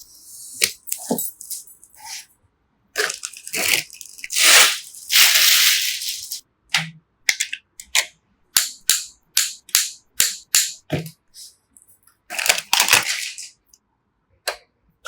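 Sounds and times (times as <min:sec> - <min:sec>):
crinkling and rustling handling: 0:00.0 - 0:02.2, 0:03.0 - 0:06.4, 0:11.8 - 0:13.7.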